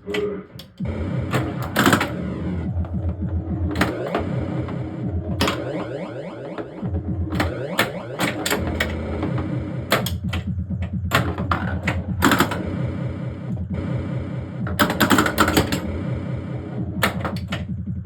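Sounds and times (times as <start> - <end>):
pinball flippers clacking: 0.1 - 12.6, 14.7 - 15.9, 17.0 - 17.7
electronic sound effects: 0.8 - 10.5, 11.2 - 17.2.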